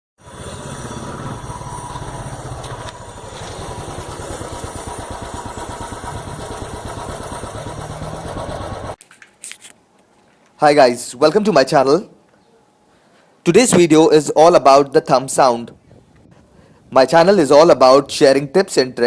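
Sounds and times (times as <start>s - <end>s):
motorcycle engine thumping: 1.7s - 9.0s.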